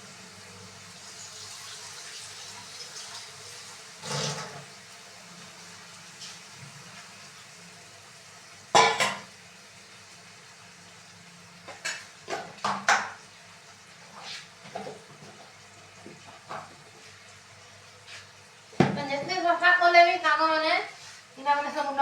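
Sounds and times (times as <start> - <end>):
pots and dishes clattering: 4.0 - 4.7, 8.8 - 9.3, 11.6 - 13.2, 14.2 - 17.0.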